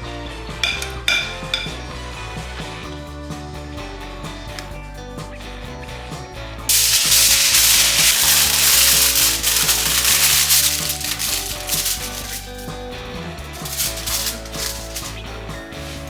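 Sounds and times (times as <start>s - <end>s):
background music: 0.0s - 16.0s
food sizzling in a pan: 6.7s - 12.6s.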